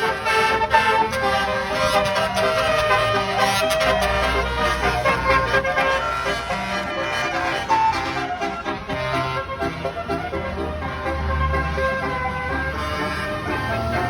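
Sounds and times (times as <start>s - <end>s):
musical bus horn playing tune: 0.0s - 14.0s.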